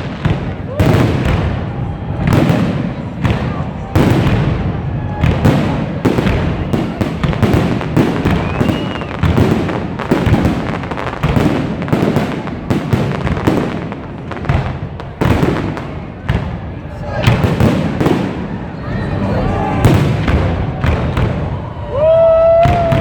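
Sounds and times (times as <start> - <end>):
fireworks booming and crackling: 0.0 - 23.0.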